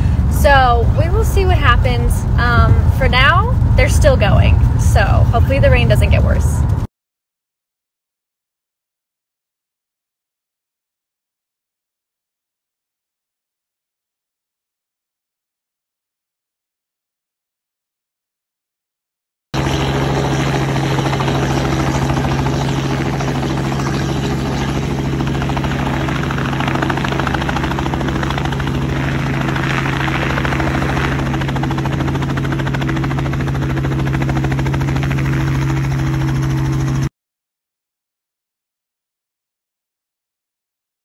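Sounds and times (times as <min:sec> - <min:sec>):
helicopter engine and rotor chop: 0:00.0 - 0:06.9, 0:19.6 - 0:37.1.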